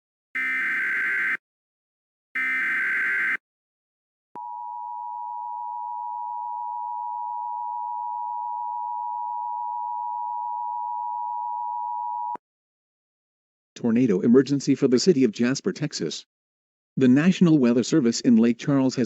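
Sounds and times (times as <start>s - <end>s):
digital data screech: 2.4s - 3.4s
harsh two-tone alert signal: 2.4s - 3.4s.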